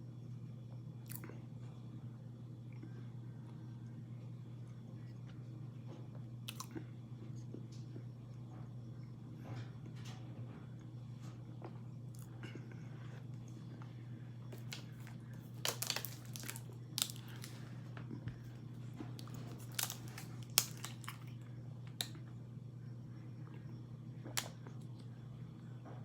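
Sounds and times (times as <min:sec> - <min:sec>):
steady low hum: 0:00.0 - 0:26.0
person crunching frozen food: 0:06.4 - 0:06.8, 0:14.5 - 0:17.8, 0:18.5 - 0:21.4.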